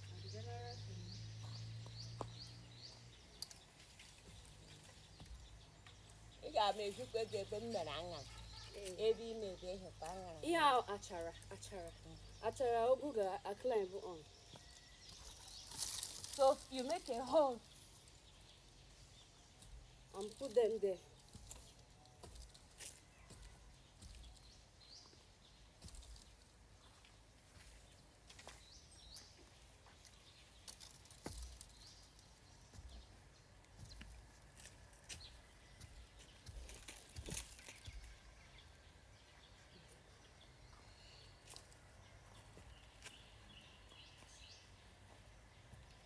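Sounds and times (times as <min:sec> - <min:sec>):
faint bird chirps: 0:00.0 - 0:10.0.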